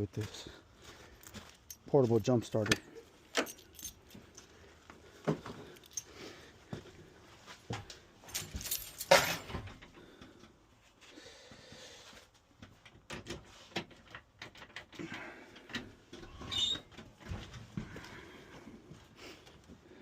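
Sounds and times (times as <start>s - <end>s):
gear clicking and rattling: 2.6s - 4.5s, 5.6s - 6.1s, 8.2s - 9.5s.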